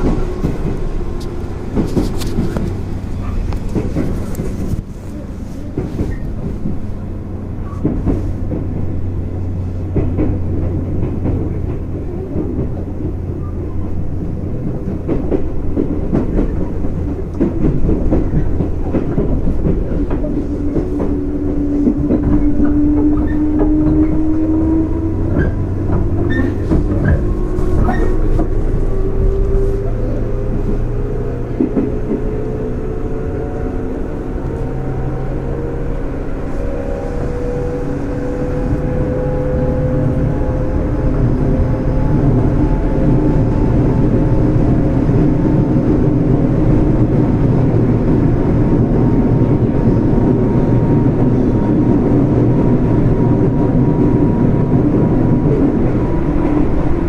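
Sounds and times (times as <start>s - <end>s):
wheels clicking over rail joints: 0.0s - 4.9s
electric train running on rails: 0.0s - 57.0s.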